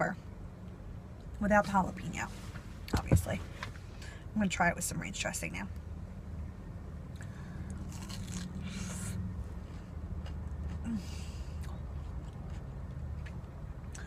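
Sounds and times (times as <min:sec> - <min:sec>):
steady low hum: 0:00.0 - 0:14.0
soft rustling: 0:02.2 - 0:03.7
chewing: 0:07.2 - 0:08.9, 0:09.6 - 0:14.0.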